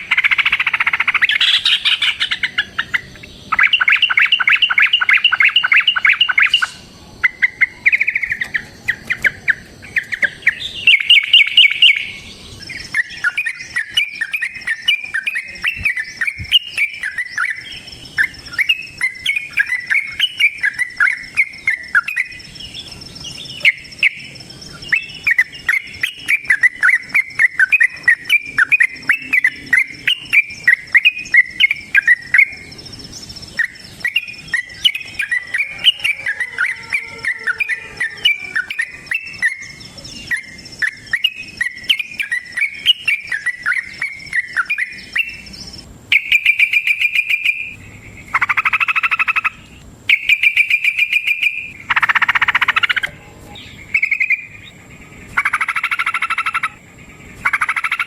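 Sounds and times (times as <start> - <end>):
bird singing chattering notes: 0.0 - 58.0
insect trill: 0.0 - 58.0.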